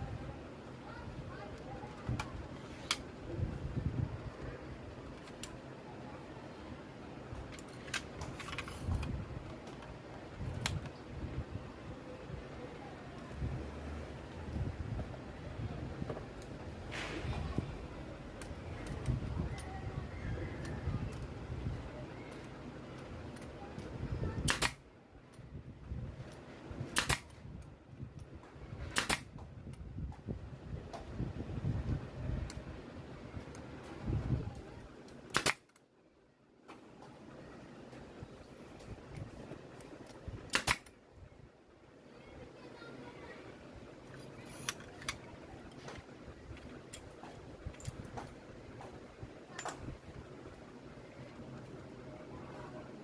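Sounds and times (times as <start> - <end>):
low steady hum: 0.0 - 53.0
air stapler firing: 24.4 - 24.8, 26.9 - 27.4, 28.9 - 29.4, 35.3 - 35.8, 40.5 - 40.9.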